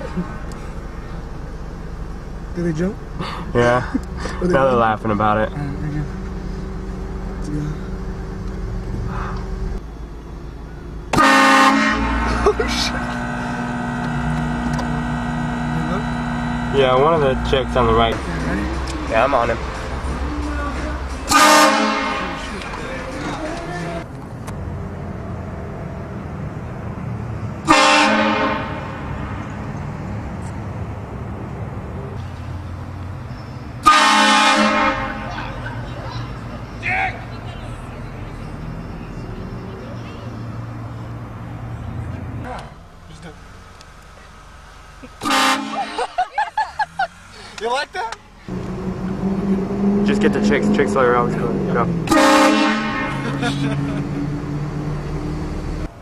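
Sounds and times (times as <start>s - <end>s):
low steady rumble: 0.0s - 24.0s
car engine running: 0.0s - 25.5s, 26.1s - 56.0s
loud train horn chord: 11.1s - 19.8s, 20.7s - 22.6s, 27.6s - 29.3s, 33.8s - 35.3s, 45.2s - 45.9s, 52.1s - 53.4s.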